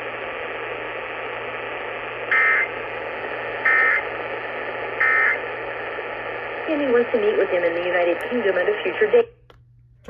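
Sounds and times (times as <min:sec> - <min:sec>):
radio static hiss: 0:00.0 - 0:09.3.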